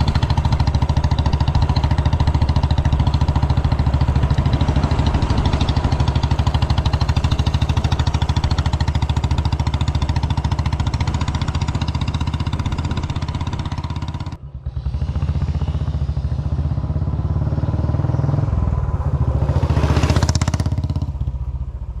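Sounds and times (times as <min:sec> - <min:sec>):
motorcycle engine thumping: 0:00.0 - 0:14.4.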